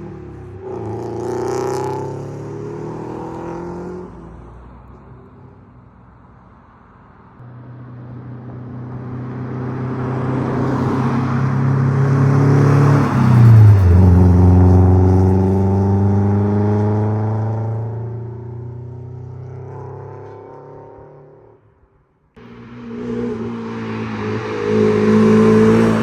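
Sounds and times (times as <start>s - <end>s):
car driving by: 7.4s - 21.2s, 22.4s - 26.0s.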